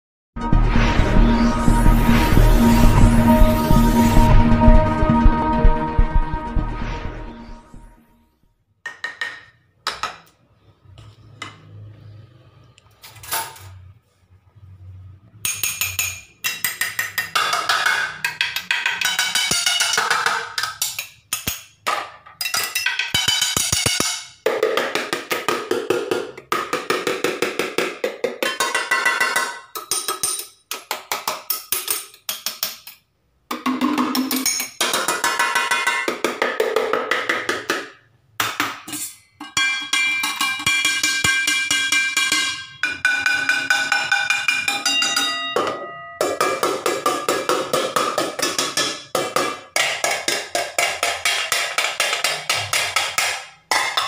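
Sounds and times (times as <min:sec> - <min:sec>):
pots and plates beaten like drums: 0:00.4 - 0:07.9, 0:15.6 - 0:21.0, 0:21.9 - 0:32.0, 0:33.5 - 0:54.0.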